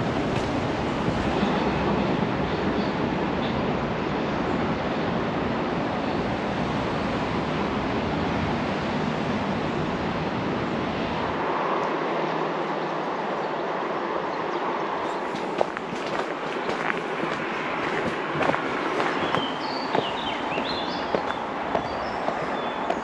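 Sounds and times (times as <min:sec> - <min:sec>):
passing train rumble: 0:00.0 - 0:23.0.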